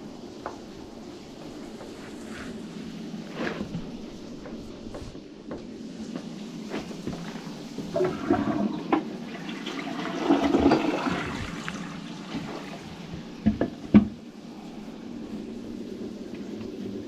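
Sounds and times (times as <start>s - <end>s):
toilet flushing: 7.1s - 14.3s.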